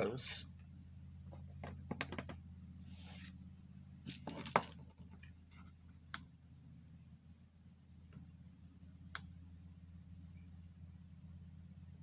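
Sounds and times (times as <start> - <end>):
steady low hum: 0.0 - 12.0
short rustle: 2.8 - 3.4.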